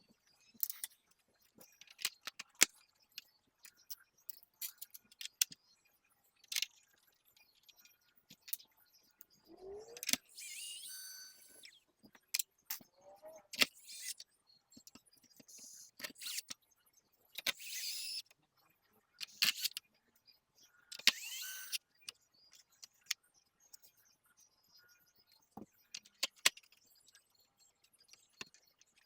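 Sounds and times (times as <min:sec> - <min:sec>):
plastic and metal parts clicking: 0:01.6 - 0:05.6, 0:09.8 - 0:10.9, 0:13.5 - 0:14.2, 0:19.2 - 0:19.8, 0:20.9 - 0:21.8, 0:25.6 - 0:26.8.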